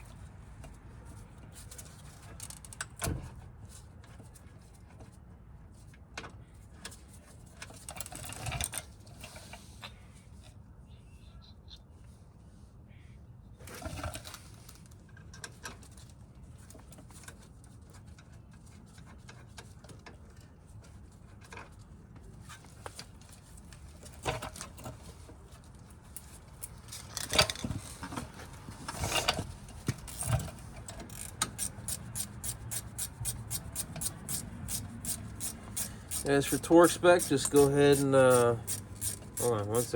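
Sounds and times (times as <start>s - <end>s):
ratchet clicks: 30.0s - 39.9s
hand tools clinking on metal: 31.1s - 39.9s.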